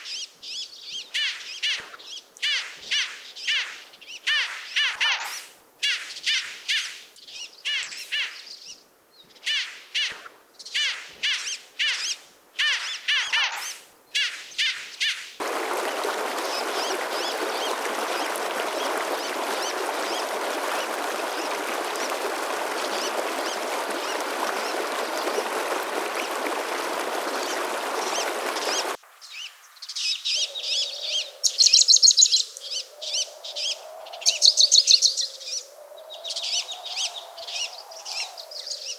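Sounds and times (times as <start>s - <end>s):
bird chirping: 0.0s - 15.4s, 27.4s - 38.9s.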